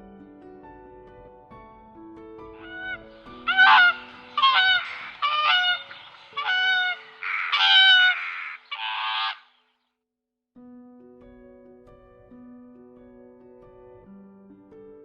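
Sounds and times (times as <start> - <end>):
soft piano music: 0.0 - 8.3, 10.6 - 15.0
honking animal calls: 2.6 - 9.6.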